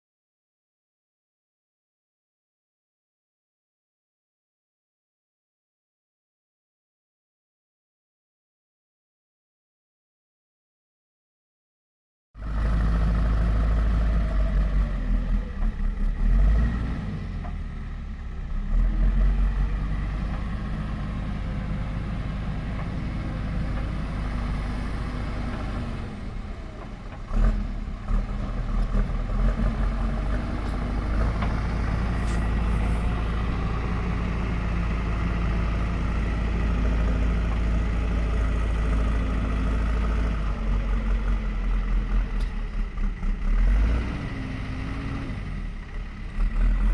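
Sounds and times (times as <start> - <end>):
diesel engine running: 12.4 - 46.9.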